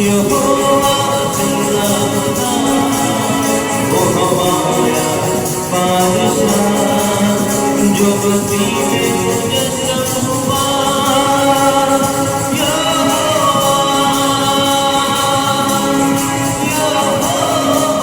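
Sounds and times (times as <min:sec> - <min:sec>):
group singing worship song: 0:00.0 - 0:18.0
instrumental accompaniment: 0:00.0 - 0:18.0
tambourine: 0:00.0 - 0:18.0.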